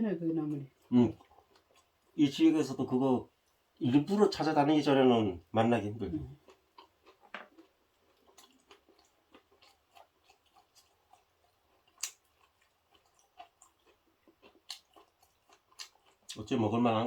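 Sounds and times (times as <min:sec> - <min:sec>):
person chewing: 0:00.7 - 0:02.2, 0:06.0 - 0:16.5.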